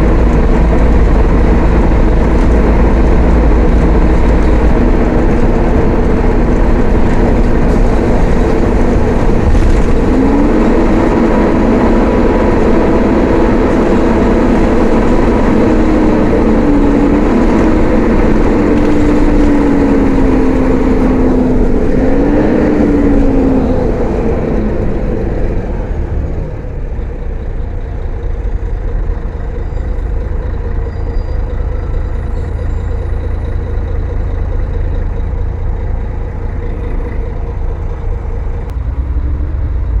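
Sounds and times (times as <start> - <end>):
bus engine running: 0.0 - 40.0
gearbox whine: 0.0 - 40.0.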